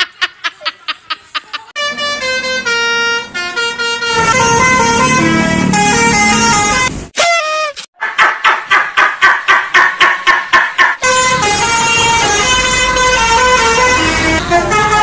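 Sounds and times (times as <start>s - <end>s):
bus horn playing a tune: 1.8s - 7.8s, 11.0s - 15.0s.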